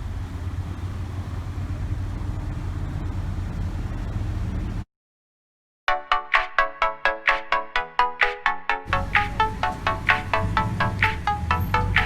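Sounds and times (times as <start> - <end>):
car engine idling: 0.0 - 4.8, 8.9 - 12.0.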